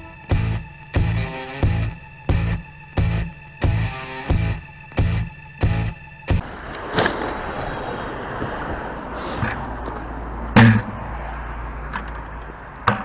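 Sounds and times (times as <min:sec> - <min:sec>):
outdoor background noise: 0:06.3 - 0:13.0
rustling: 0:06.4 - 0:11.1
sharp knocks: 0:10.6 - 0:11.0.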